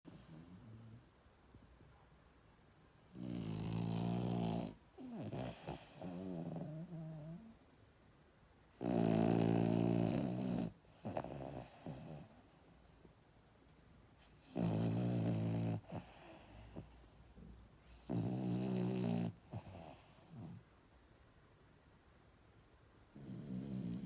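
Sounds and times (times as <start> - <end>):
puppy snoring: 0.1 - 1.2, 3.0 - 7.6, 8.7 - 12.7, 14.2 - 17.2, 17.8 - 20.7, 23.1 - 24.0.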